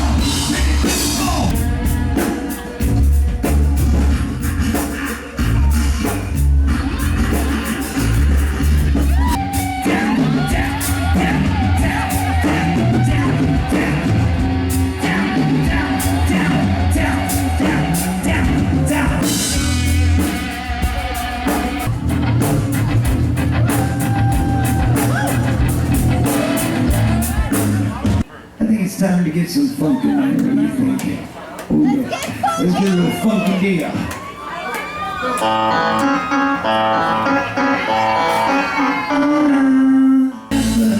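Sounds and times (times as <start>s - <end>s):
live rock band: 0.0s - 28.3s, 35.3s - 40.9s
person singing or yelling: 9.1s - 19.5s.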